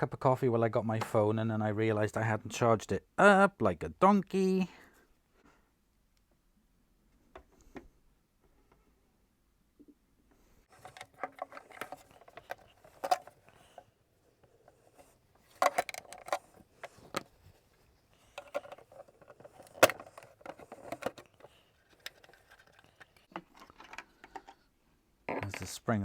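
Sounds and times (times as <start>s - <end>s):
hand tools clicking on plastic: 10.7s - 17.4s, 18.2s - 24.6s.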